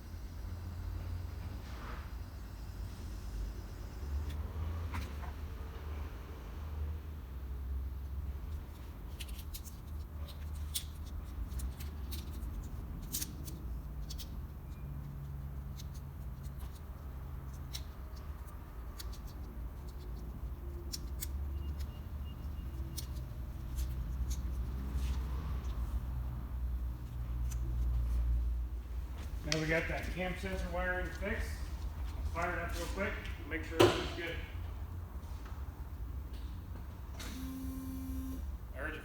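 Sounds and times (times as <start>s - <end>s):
hand tools clicking and snipping: 17.5s - 22.0s, 22.7s - 25.8s.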